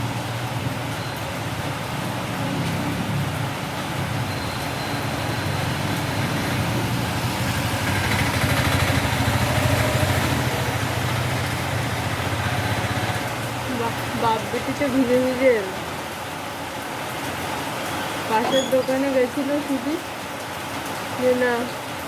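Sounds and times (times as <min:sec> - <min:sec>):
heavy rain: 0:00.0 - 0:22.0.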